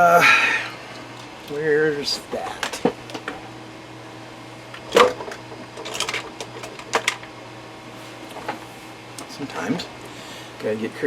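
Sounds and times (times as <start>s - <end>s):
low electrical hum: 0.0s - 11.0s
tools and parts clicking: 4.8s - 7.3s.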